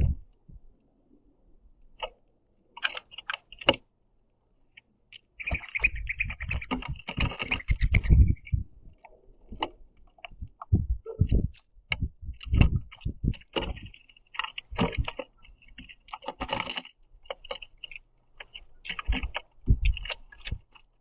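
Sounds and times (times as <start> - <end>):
birds pecking seeds on wood: 1.7 - 21.0.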